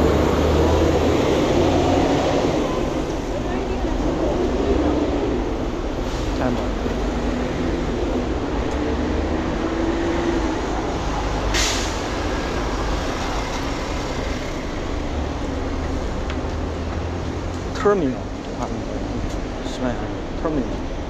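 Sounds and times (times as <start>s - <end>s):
traffic engine rumble: 0.0s - 21.0s
bus air hiss: 11.5s - 12.2s.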